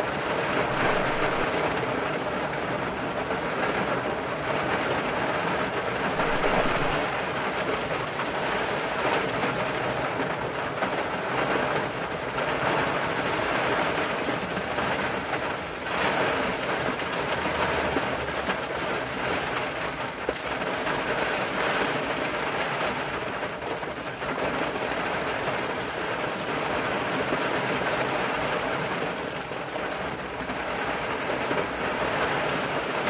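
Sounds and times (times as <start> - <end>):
heavy rain on car roof: 0.0 - 33.0.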